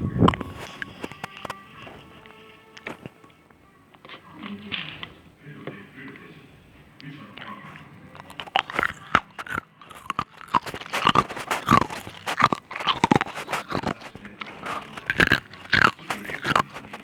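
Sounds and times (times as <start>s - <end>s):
wet chewing: 0.0s - 5.2s, 7.0s - 17.0s
ice crunching in mouth: 0.1s - 3.3s, 7.8s - 17.0s.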